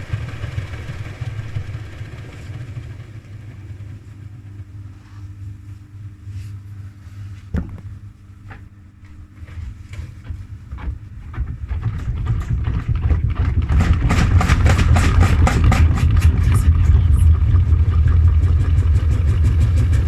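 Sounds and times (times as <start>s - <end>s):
washing machine drum spinning: 0.0s - 5.0s, 7.5s - 20.0s
unbalanced drum knocking and rattling: 10.1s - 20.0s.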